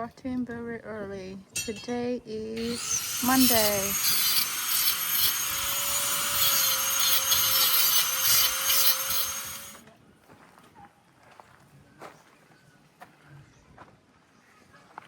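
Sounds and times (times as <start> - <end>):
power tool cutting: 1.6 - 2.0, 2.6 - 9.8.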